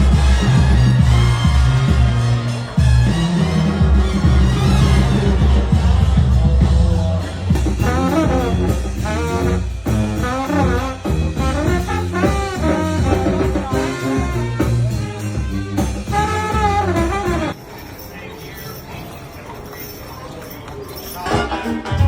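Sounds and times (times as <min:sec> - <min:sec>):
brass jazz band playing: 0:00.0 - 0:17.6.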